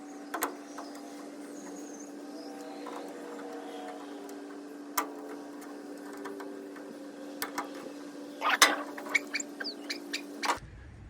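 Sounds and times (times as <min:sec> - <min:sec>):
steady background hum: 0:00.0 - 0:11.0
metal clips clicking and scraping: 0:02.8 - 0:09.8.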